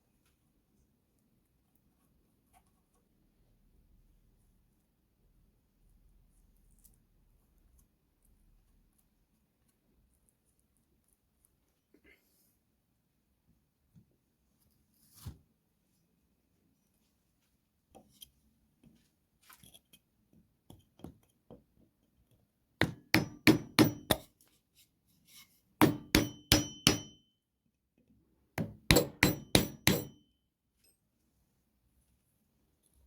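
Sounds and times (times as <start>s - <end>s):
hammer blows on axe handle: 22.8s - 24.2s, 25.8s - 27.2s, 28.6s - 30.2s.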